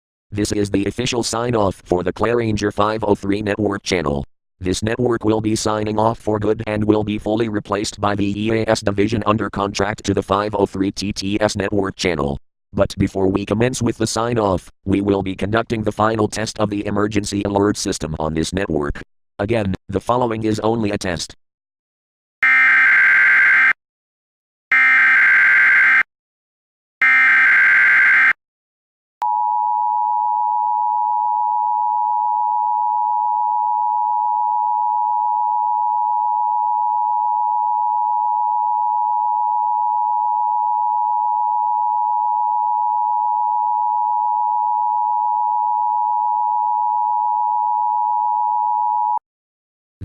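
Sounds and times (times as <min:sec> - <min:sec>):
two-tone alert signal: 0:22.4 - 0:23.8, 0:24.7 - 0:26.1, 0:27.0 - 0:28.4.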